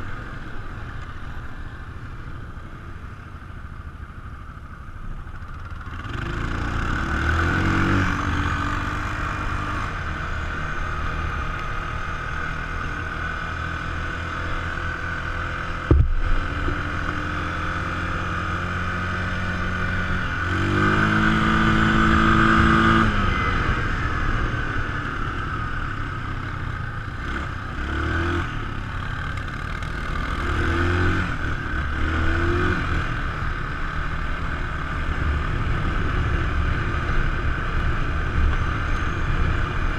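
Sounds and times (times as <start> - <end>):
atv engine running: 0.0 - 39.9
sharp knock: 15.9 - 16.4.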